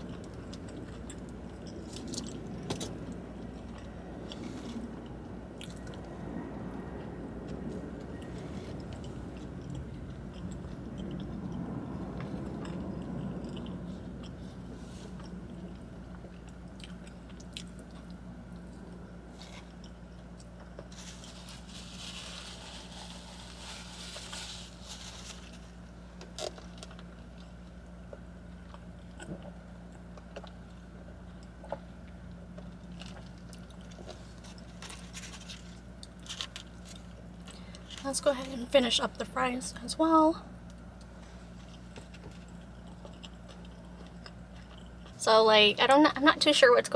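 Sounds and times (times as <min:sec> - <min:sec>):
chewing and biting: 0:00.0 - 0:38.1, 0:40.6 - 0:45.2
steady low hum: 0:00.0 - 0:46.9.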